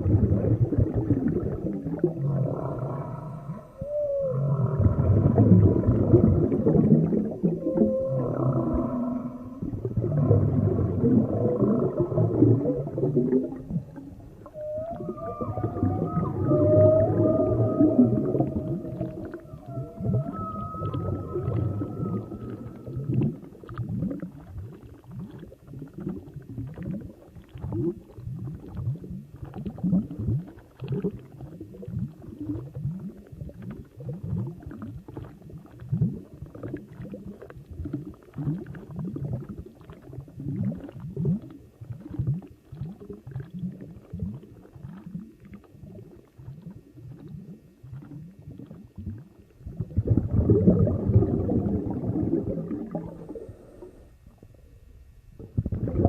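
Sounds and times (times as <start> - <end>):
low gurgling sweeps: 0.0 - 35.3, 37.8 - 56.0
moaning two-note underwater call: 3.0 - 5.1, 7.4 - 9.7, 14.0 - 23.5.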